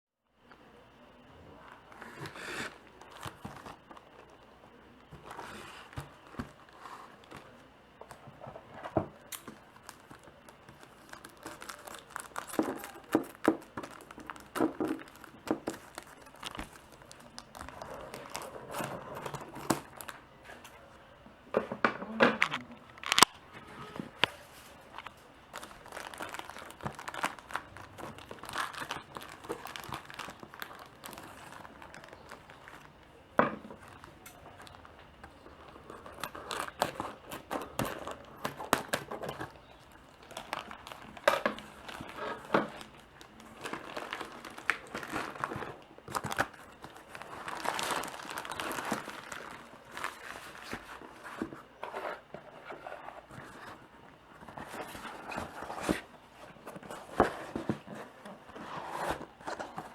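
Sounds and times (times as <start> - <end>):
wrapping crinkling and tearing: 1.6 - 20.8, 22.4 - 59.9
packaging clicks and snaps: 9.2 - 20.8, 22.2 - 23.4, 24.1 - 51.6.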